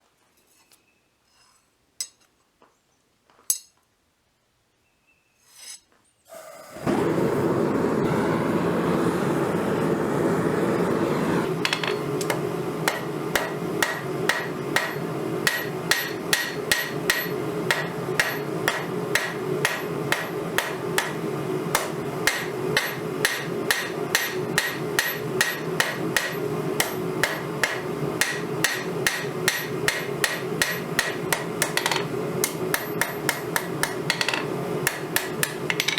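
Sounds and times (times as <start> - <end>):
forge rushing noise: 6.7 - 11.6
hammer ringing on anvil: 11.7 - 21.2, 22.3 - 35.9.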